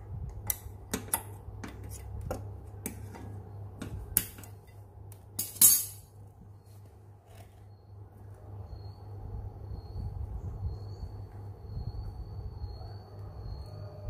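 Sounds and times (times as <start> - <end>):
steady low hum: 0.0 - 14.0
hand tools and metal parts clinking: 5.4 - 6.1.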